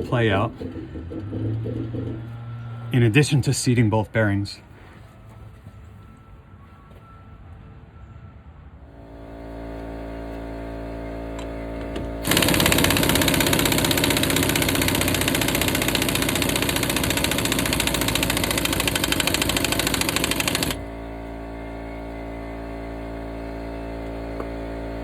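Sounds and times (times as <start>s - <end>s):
impact wrench rattling: 12.2s - 20.8s.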